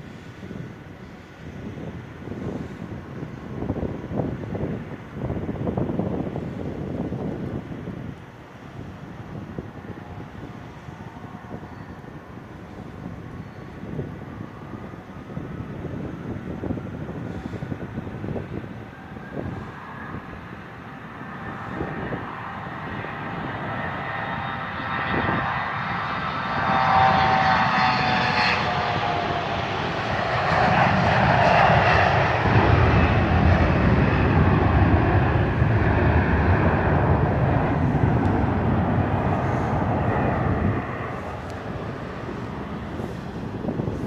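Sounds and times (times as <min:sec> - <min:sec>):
jet engine whine: 0:00.0 - 0:44.0
loud jet rumble: 0:12.3 - 0:44.0.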